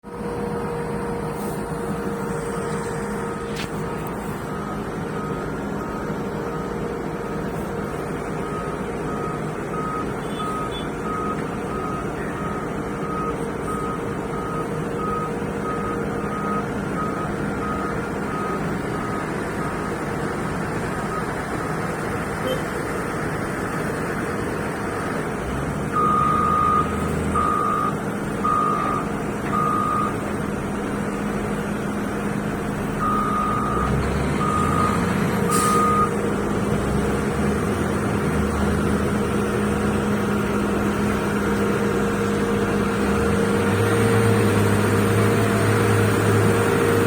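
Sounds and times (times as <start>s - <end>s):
diesel engine running: 0.0s - 47.0s
reversing alarm beeping: 2.2s - 22.8s, 25.9s - 30.3s, 32.9s - 36.3s.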